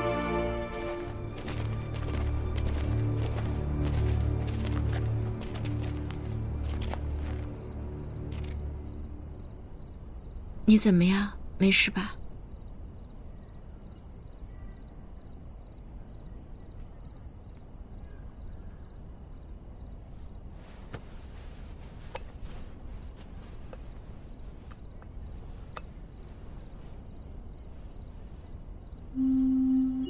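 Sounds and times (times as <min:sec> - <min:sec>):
wind instrument tune: 0:00.0 - 0:02.7, 0:29.2 - 0:30.0
crickets chirping: 0:00.0 - 0:30.0.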